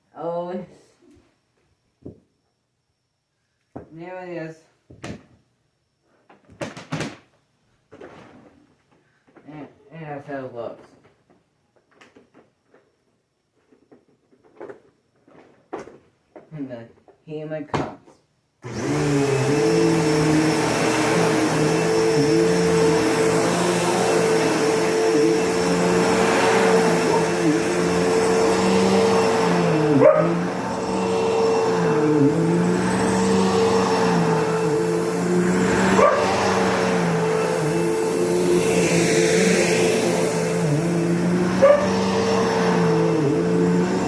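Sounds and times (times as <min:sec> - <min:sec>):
vacuum cleaner motor whine: 0:18.6 - 0:44.0.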